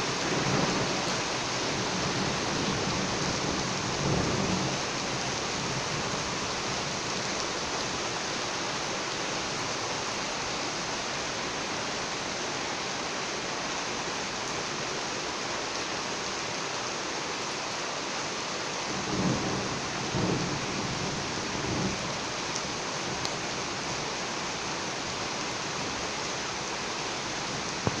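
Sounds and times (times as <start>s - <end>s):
steady rain falling: 0.0s - 28.0s
rumble of thunder: 1.7s - 4.8s, 19.0s - 22.0s.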